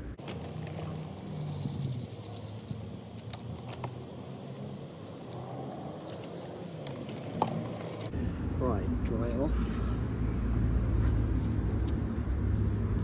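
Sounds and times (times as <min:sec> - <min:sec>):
sandpaper rubbing strokes: 0:00.2 - 0:02.9, 0:03.6 - 0:05.4, 0:06.0 - 0:08.1.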